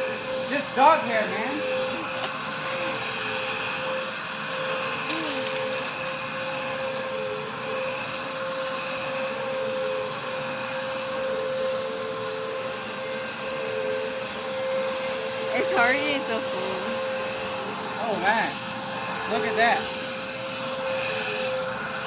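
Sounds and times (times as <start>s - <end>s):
vacuum cleaner running over carpet: 0.0s - 22.0s.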